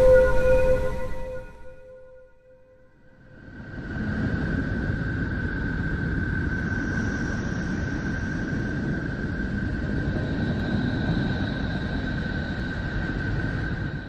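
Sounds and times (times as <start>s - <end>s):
low rumble drone: 0.0s - 2.6s
faint higher steady tones: 0.0s - 2.8s
high whistling tone: 0.0s - 2.8s.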